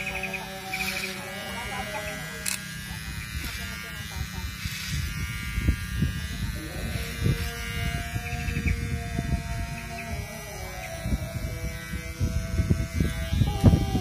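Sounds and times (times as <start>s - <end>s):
electric hair clipper buzzing: 0.0s - 14.0s
wind rumble on microphone: 2.8s - 14.0s.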